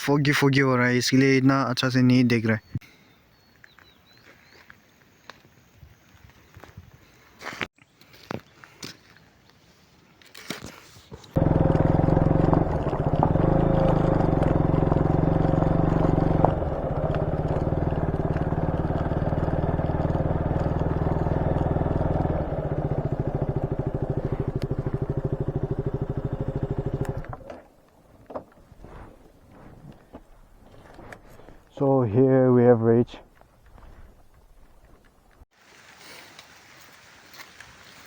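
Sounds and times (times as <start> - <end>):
motorcycle engine running: 11.4 - 27.6.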